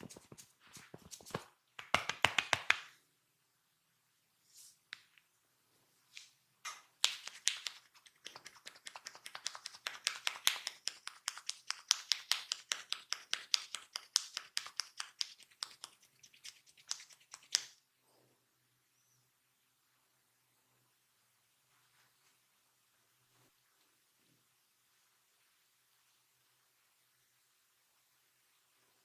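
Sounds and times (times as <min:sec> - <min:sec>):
hands slapping body: 0:00.0 - 0:03.0, 0:06.2 - 0:17.8.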